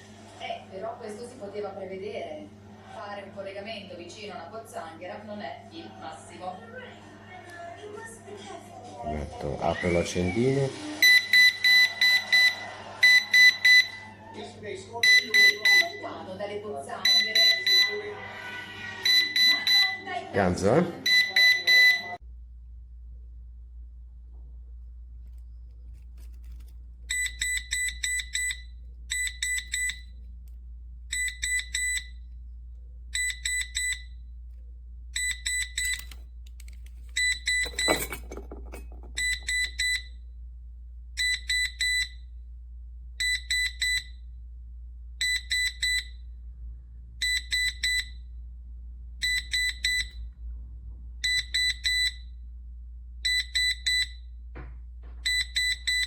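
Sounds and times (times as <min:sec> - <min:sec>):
high-pitched alarm beeps: 0:21.1 - 0:22.2.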